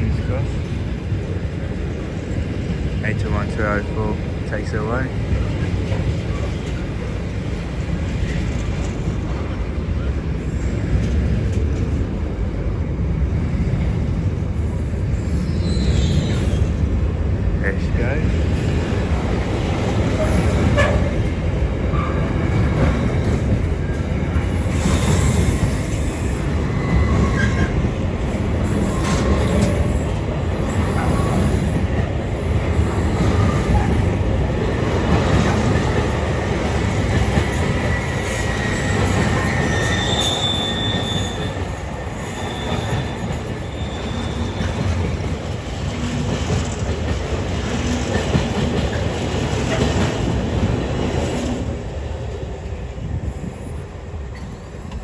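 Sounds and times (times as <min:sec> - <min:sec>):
train wheels rumbling on track: 0:00.0 - 0:55.0
high-pitched wheel squeals: 0:14.6 - 0:16.7, 0:38.0 - 0:44.8.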